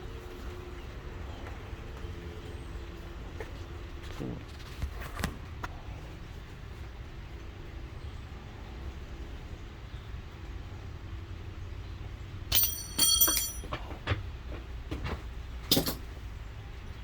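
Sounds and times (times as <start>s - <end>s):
metal hand tools clanking: 12.5s - 13.8s, 15.7s - 16.1s.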